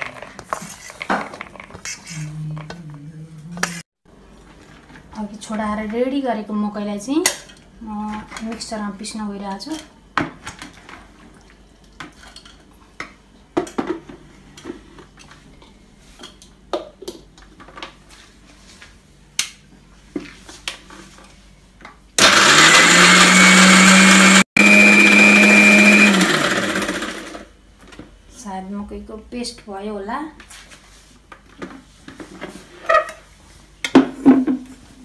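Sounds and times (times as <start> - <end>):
mixer grinder motor grinding: 22.2 - 27.5.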